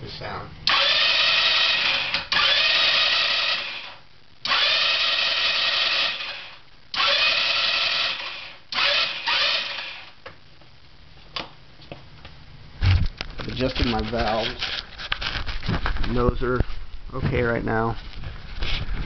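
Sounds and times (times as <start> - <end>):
scooter electric starter whirring: 0.7 - 10.2.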